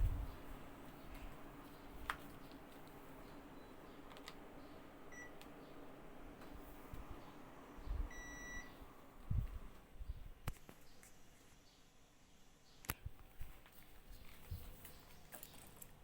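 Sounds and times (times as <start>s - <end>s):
air conditioner beeping: 0.0s - 10.4s
steady low hum: 0.0s - 11.3s.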